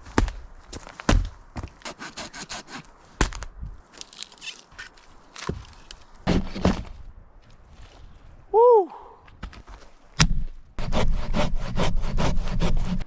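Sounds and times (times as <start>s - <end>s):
firewood cracking and snapping: 3.2s - 7.0s.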